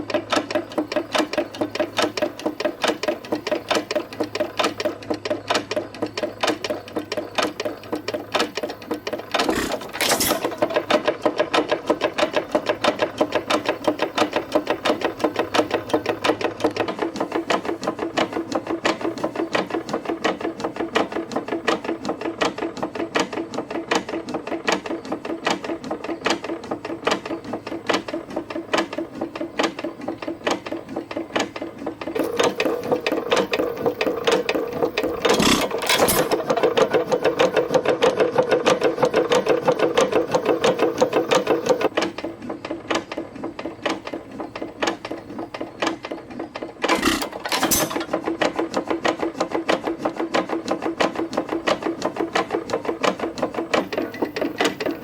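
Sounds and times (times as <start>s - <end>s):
hit-and-miss engine clattering: 0.0s - 55.0s
heavy engine thump: 9.3s - 11.0s, 32.2s - 37.5s, 46.8s - 48.2s.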